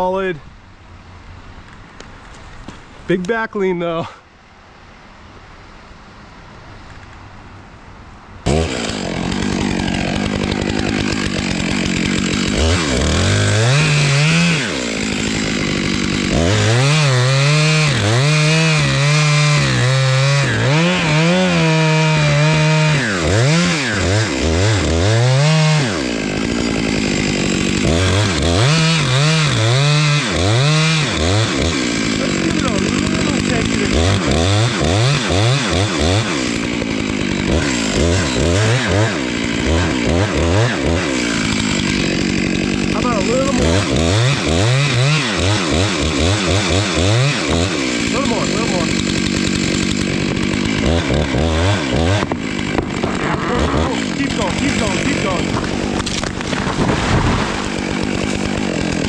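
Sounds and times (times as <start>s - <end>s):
chainsaw cutting wood: 8.4s - 59.0s.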